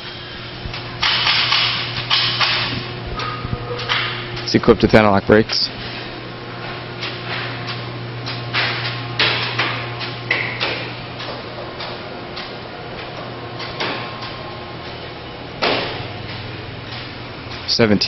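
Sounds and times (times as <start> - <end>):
steady low hum: 0.0 - 18.0
sharp knocks: 15.6 - 17.6.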